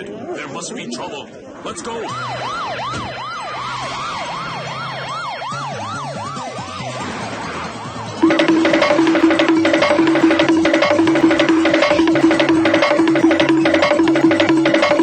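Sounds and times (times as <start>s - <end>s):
low bass line: 8.2s - 15.0s
music with wood-block beat: 8.2s - 15.0s.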